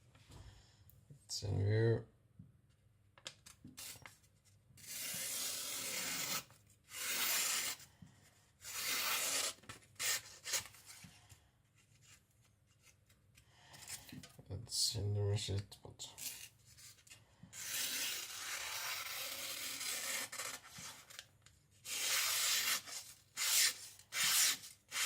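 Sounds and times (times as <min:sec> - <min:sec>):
blade scraping: 0:04.8 - 0:07.9, 0:08.6 - 0:11.0, 0:21.8 - 0:25.0.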